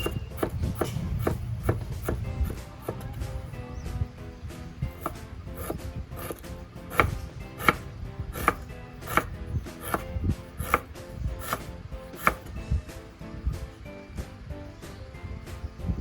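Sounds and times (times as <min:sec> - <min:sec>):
knife chopping on cutting board: 0:00.0 - 0:03.4, 0:04.8 - 0:12.5
background music: 0:00.0 - 0:16.0.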